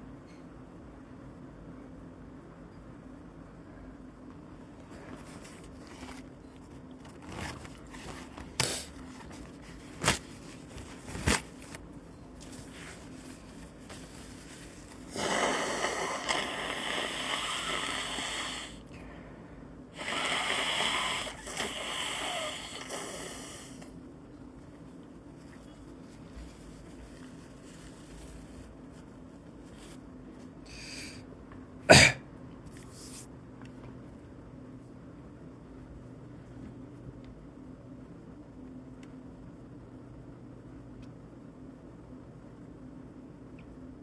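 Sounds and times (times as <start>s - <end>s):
person blowing nose: 15.0s - 18.8s, 20.0s - 23.8s
person sniffing: 15.0s - 18.8s, 20.0s - 23.9s, 30.7s - 31.2s.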